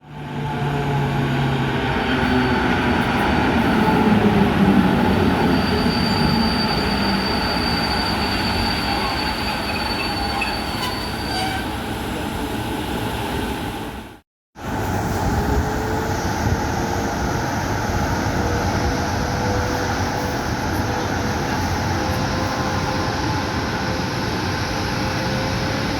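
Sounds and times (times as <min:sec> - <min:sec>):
train rail and wheel noise: 0:00.0 - 0:25.9
high wheel squeal: 0:04.8 - 0:11.8.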